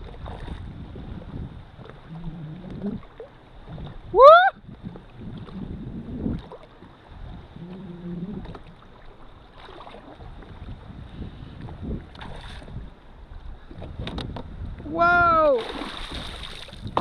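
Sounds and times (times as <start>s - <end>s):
wind on microphone: 0.0s - 9.1s, 9.7s - 17.0s
water sloshing around a kayak: 0.0s - 17.0s.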